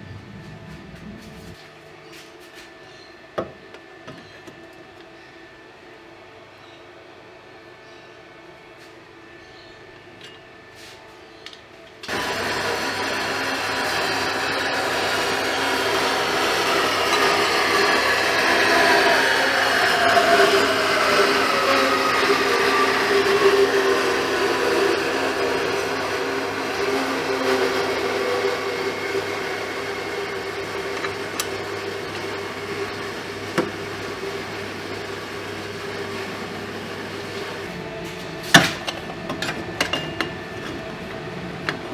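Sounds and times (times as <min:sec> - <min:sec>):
steady mechanical hum: 0:00.0 - 0:41.9
power tool running: 0:12.1 - 0:38.9.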